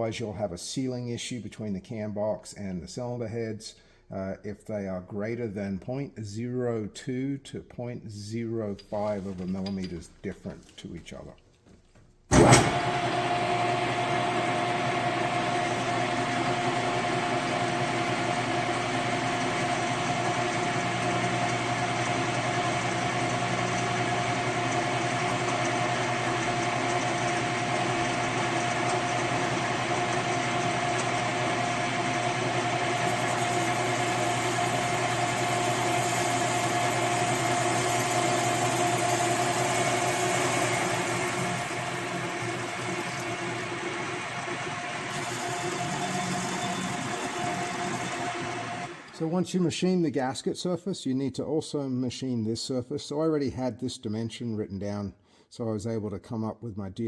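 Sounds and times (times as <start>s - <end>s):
machine tool humming and whining: 12.3s - 49.3s.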